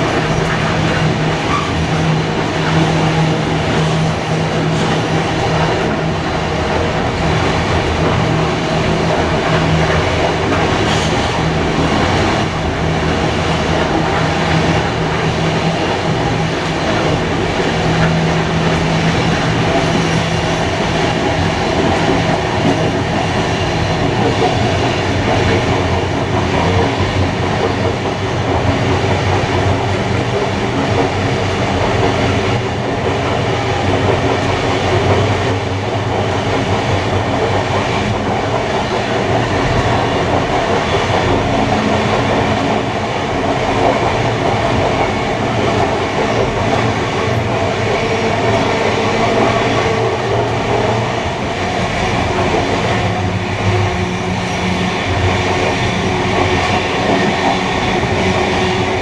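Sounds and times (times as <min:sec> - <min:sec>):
constant drone: 0:00.0 - 0:59.0
train wheels rumbling on rail: 0:00.0 - 0:59.0.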